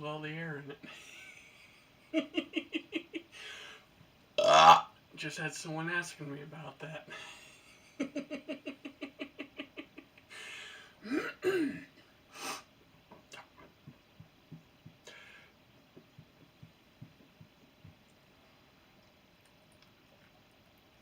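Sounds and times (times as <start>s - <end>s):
man laughing: 0.7s - 3.3s, 7.1s - 10.3s
faint low pops: 13.1s - 18.3s.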